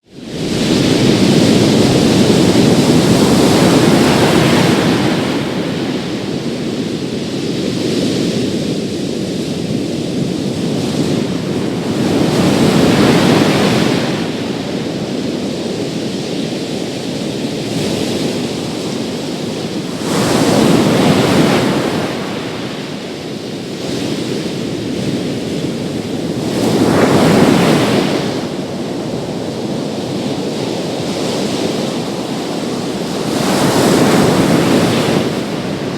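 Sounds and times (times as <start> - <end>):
continuous surf wash: 0.0 - 35.9
wave crashing on beach: 0.1 - 35.9.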